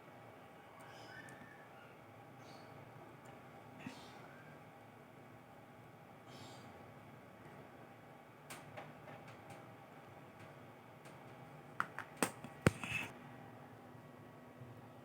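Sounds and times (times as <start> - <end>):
phone and cable clicking: 11.8 - 13.1.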